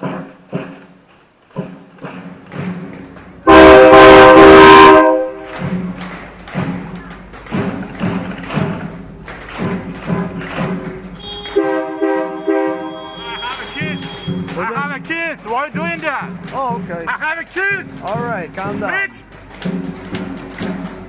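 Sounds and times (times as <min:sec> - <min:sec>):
music with steady beat: 0:01.5 - 0:21.0
train horn chord: 0:03.5 - 0:05.6, 0:11.2 - 0:14.5.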